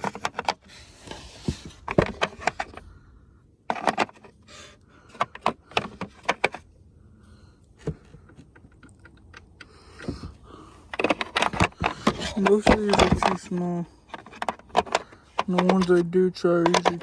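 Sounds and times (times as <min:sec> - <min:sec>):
metal bits clicking and rattling: 0:16.6 - 0:17.0.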